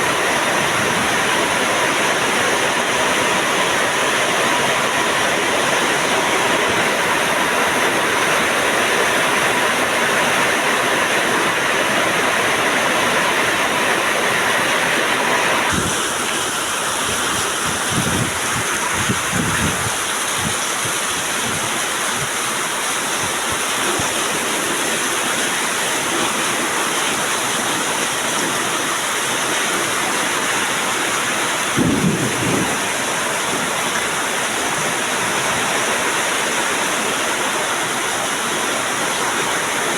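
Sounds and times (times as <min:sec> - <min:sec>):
heavy rain pouring: 0:00.0 - 0:39.9
thunder rumbling: 0:31.7 - 0:33.2.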